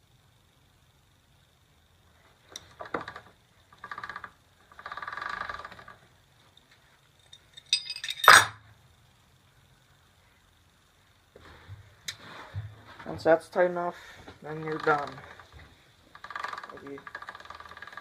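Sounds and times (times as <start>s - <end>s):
sharp metal clank: 7.6s - 8.6s.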